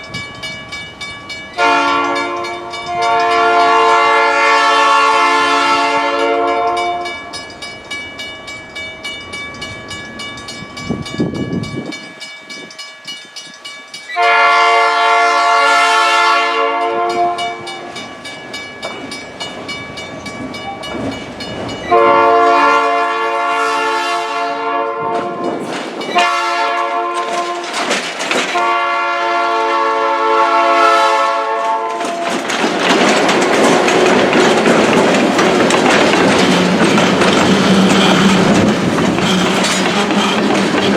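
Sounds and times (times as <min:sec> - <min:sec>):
clicking rail noise: 0:00.0 - 0:14.3, 0:16.6 - 0:22.3, 0:24.9 - 0:30.2, 0:31.0 - 0:40.9
train engine and wheels rumbling: 0:00.0 - 0:40.9
locomotive air horn blasts: 0:01.6 - 0:07.2, 0:14.2 - 0:17.9, 0:21.9 - 0:25.5, 0:26.1 - 0:27.9, 0:28.5 - 0:32.4.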